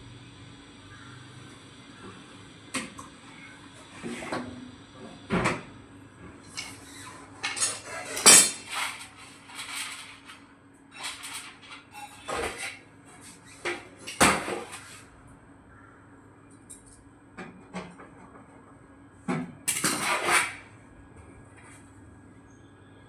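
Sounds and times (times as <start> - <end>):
faint steady hum: 0.0 - 8.6, 20.6 - 23.0.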